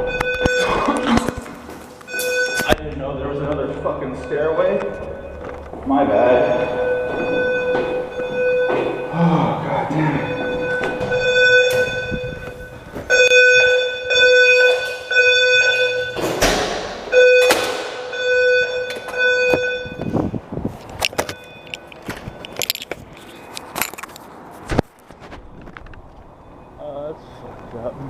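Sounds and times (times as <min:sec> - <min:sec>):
fire alarm buzzing tone: 0:00.0 - 0:01.2, 0:02.0 - 0:02.8, 0:03.6 - 0:20.4, 0:21.0 - 0:22.8.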